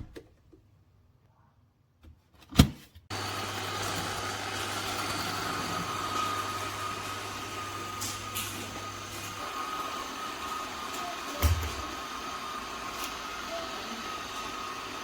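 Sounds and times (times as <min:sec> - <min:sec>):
robot vacuum suction motor: 0:03.1 - 0:15.0.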